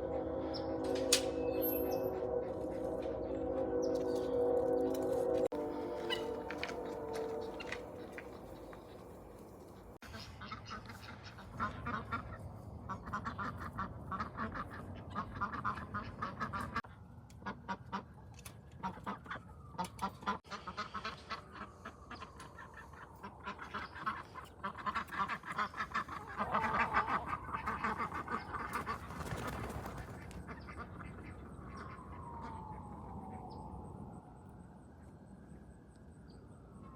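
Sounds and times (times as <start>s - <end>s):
drawn-out falling call: 5.4s - 9.2s
ducks quacking: 5.6s - 9.1s, 9.7s - 16.8s, 18.8s - 32.1s.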